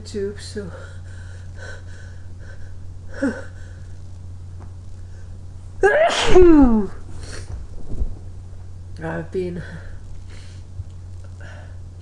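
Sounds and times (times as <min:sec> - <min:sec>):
man sneezing: 0:05.8 - 0:06.9.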